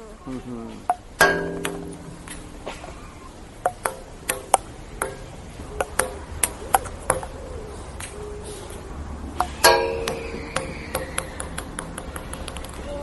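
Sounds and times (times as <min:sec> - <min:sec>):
ping pong ball clicking: 0:00.9 - 0:02.7, 0:03.6 - 0:07.4, 0:09.4 - 0:13.0.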